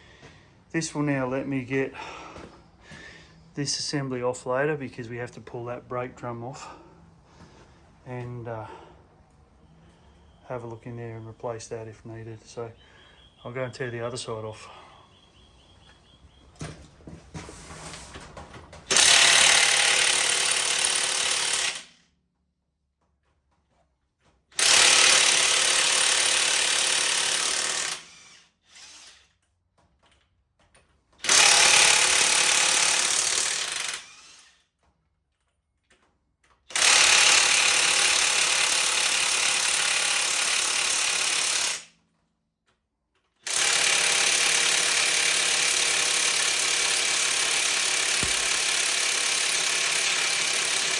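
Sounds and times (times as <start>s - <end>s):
impact wrench hammering: 43.4s - 50.9s.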